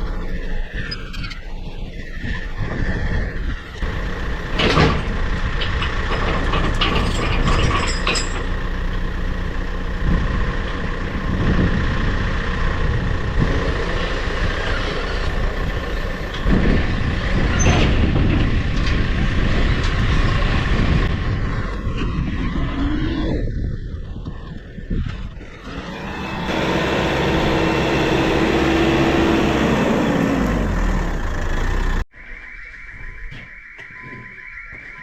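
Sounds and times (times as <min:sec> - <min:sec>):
engine running with whine: 0:00.0 - 0:32.2
metallic clanks and rattles: 0:03.8 - 0:09.0.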